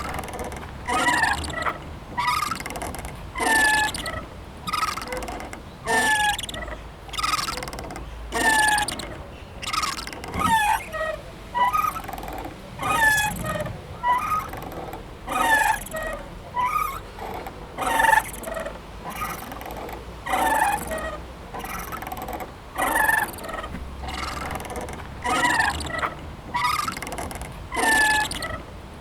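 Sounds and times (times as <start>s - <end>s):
playground swing squeaking: 0.0s - 29.0s.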